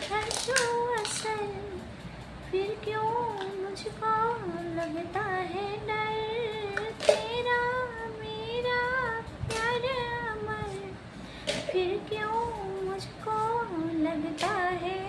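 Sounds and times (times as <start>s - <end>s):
woman singing unaccompanied: 0.0s - 15.0s
singer breathing: 11.0s - 11.7s.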